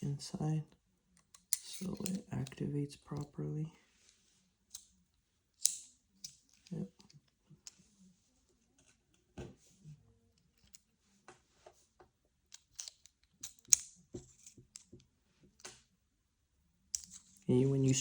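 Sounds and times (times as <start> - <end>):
small metal parts clicking: 1.2 - 2.6, 5.6 - 7.8, 12.5 - 14.9, 16.9 - 17.4.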